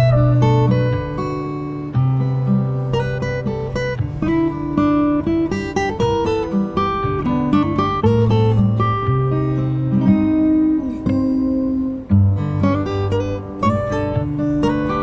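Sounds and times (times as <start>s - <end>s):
acoustic guitar melody: 0.0s - 15.0s
sustained bass line: 0.0s - 15.0s.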